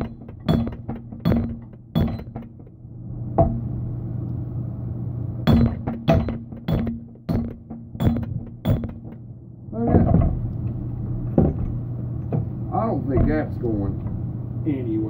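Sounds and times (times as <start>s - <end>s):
hammer striking steel axe head: 0.0s - 2.7s, 5.5s - 9.2s
steady low hum: 0.0s - 15.0s.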